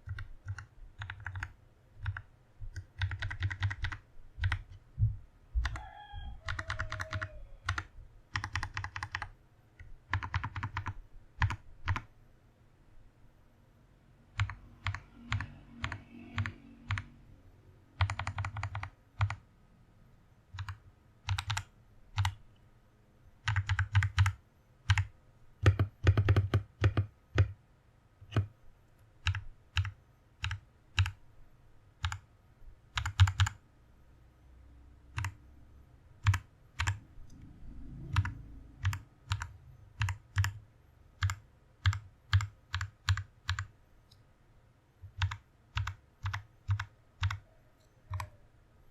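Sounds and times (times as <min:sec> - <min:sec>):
mechanical keyboard typing: 0:00.0 - 0:04.8, 0:06.5 - 0:12.1, 0:14.3 - 0:17.1, 0:18.0 - 0:19.4, 0:20.5 - 0:22.4, 0:23.4 - 0:27.6, 0:29.2 - 0:31.2, 0:32.0 - 0:32.2, 0:32.9 - 0:33.6, 0:35.1 - 0:35.4, 0:36.2 - 0:37.0, 0:38.1 - 0:40.6, 0:41.2 - 0:43.7, 0:45.0 - 0:47.4.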